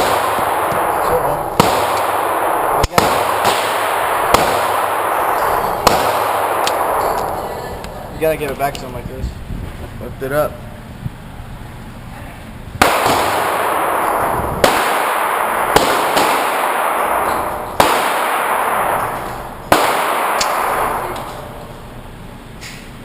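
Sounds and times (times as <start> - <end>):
pistol shots echoing: 0.0 - 8.9, 12.8 - 22.2.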